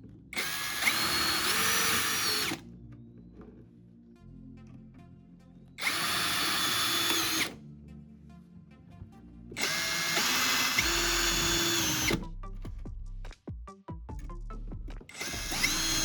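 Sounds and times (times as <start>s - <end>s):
electric power drill whining: 0.4s - 2.6s, 5.8s - 7.6s, 9.6s - 12.2s, 15.1s - 16.0s.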